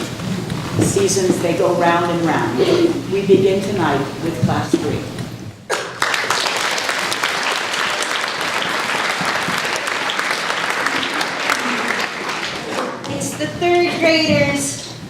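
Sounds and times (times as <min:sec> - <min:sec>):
audience clapping: 0:05.7 - 0:13.4.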